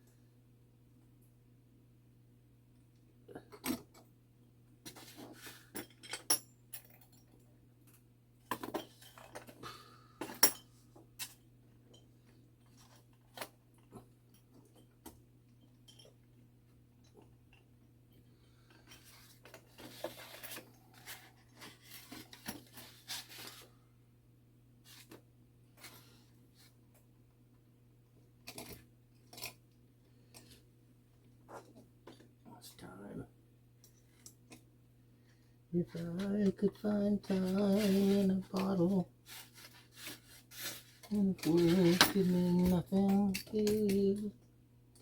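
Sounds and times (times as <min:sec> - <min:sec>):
small metal parts clinking: 0:41.1 - 0:44.3.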